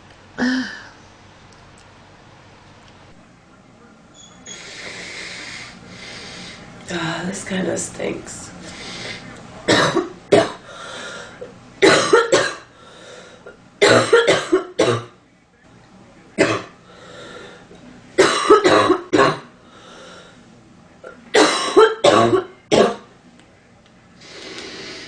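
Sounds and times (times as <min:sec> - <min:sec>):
woman coughing: 0:09.7 - 0:10.6, 0:11.8 - 0:12.6, 0:13.8 - 0:15.1, 0:18.2 - 0:19.5, 0:21.4 - 0:23.1.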